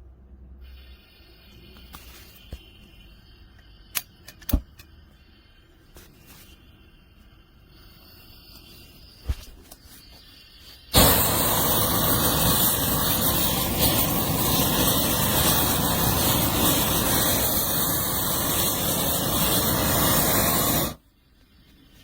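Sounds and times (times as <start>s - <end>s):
torch burning with loud rush: 10.4s - 21.0s.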